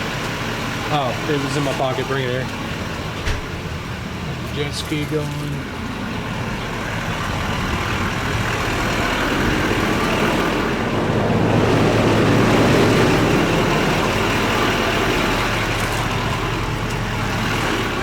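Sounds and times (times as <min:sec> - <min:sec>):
jet ski engine droning: 0:00.0 - 0:18.0.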